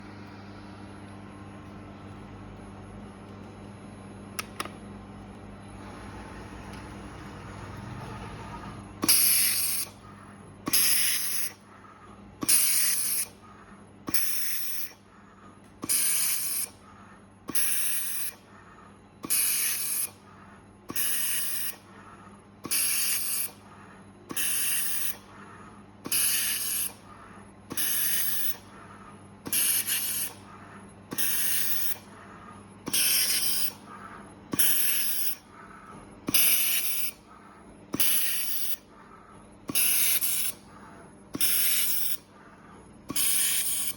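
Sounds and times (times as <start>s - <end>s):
faint machine hum: 0.0s - 43.9s
laser welder hissing bursts: 9.0s - 10.0s, 10.7s - 11.6s, 12.4s - 13.4s, 14.1s - 15.0s, 15.8s - 16.8s, 17.5s - 18.4s, 19.2s - 20.2s, 20.9s - 21.8s, 22.6s - 23.6s, 24.3s - 25.2s, 26.0s - 27.0s, 27.7s - 28.6s, 29.5s - 30.4s, 31.1s - 32.1s, 32.9s - 33.8s, 34.5s - 35.4s, 36.3s - 37.2s, 37.9s - 38.8s, 39.7s - 40.7s, 41.3s - 42.2s, 43.1s - 43.9s.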